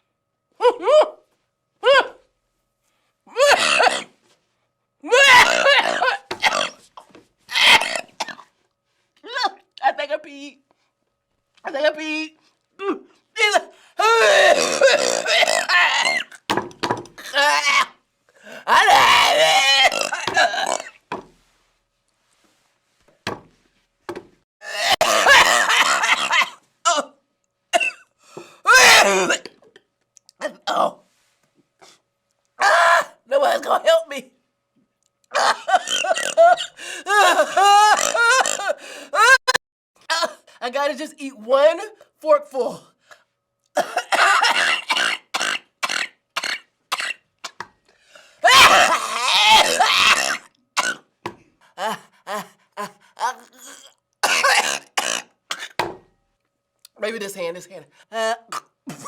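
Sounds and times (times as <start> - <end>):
person coughing: 24.7 - 29.7, 43.8 - 47.6, 52.8 - 55.8, 58.5 - 59.0.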